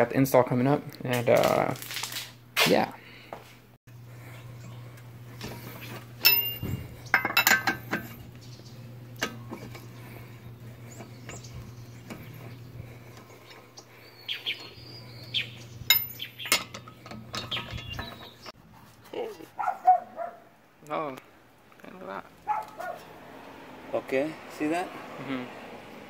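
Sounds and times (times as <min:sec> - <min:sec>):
low steady hum: 0:03.2 - 0:18.9
metal tools clinking: 0:05.8 - 0:08.3, 0:15.8 - 0:18.5.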